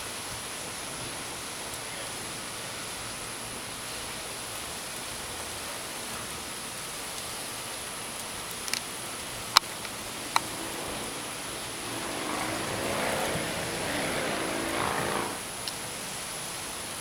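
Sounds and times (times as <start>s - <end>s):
heavy rain hissing: 7.3s - 17.0s
vehicle passing: 9.2s - 15.6s.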